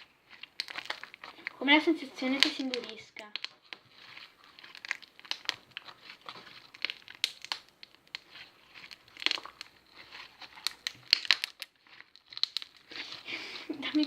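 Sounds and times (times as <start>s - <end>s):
slime crackling while kneaded: 0.0s - 14.0s.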